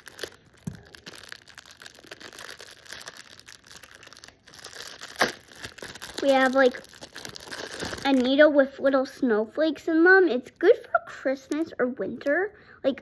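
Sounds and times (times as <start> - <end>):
plastic wrapping crinkling: 0.0 - 8.5.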